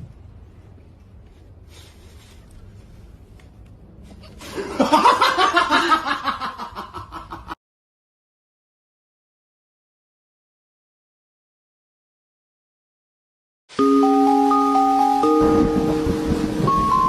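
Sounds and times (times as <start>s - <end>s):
person laughing loudly: 4.4s - 7.6s.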